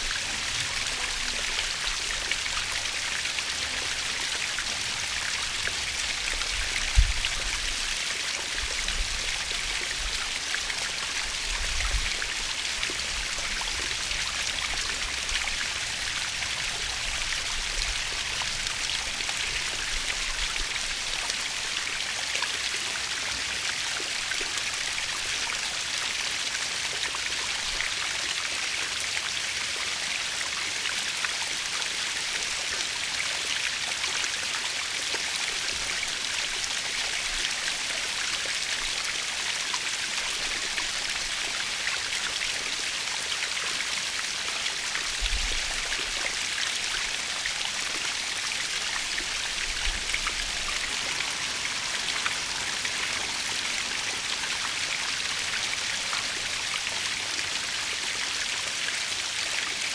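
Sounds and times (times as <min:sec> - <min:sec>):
waterfall splashing: 0:47.2 - 0:59.3.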